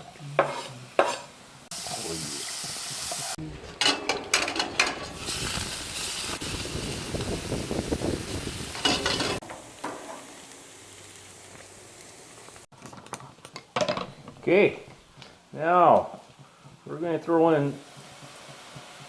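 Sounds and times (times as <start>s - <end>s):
utensil scraping a pan: 0.0s - 2.0s, 8.7s - 10.2s
stir-fry sizzling in a pan: 0.0s - 3.4s, 5.1s - 12.7s, 17.4s - 19.0s.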